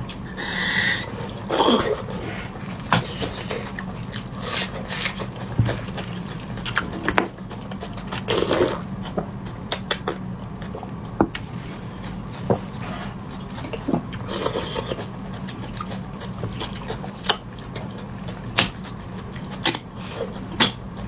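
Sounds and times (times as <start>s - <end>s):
steady low hum: 0.0s - 21.0s
wet chewing and lip smacks: 9.0s - 20.7s.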